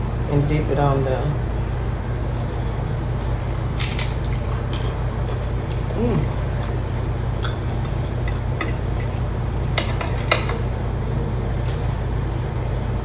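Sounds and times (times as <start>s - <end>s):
chip crunching: 3.2s - 9.8s.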